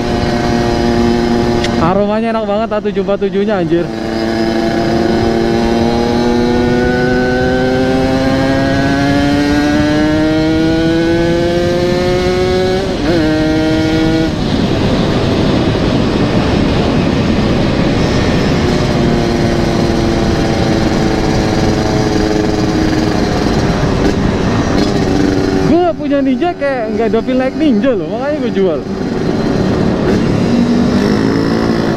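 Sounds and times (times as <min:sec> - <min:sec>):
motorcycle engine accelerating: 0:00.0 - 0:31.9
rushing noise: 0:12.5 - 0:31.9.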